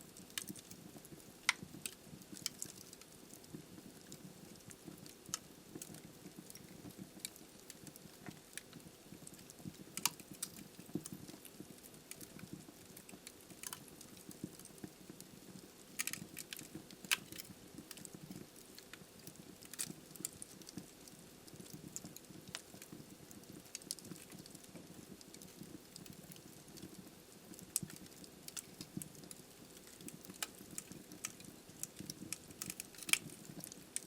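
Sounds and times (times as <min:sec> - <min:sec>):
firewood crackling and popping: 0:00.0 - 0:34.0
low hush of fire: 0:00.0 - 0:34.0.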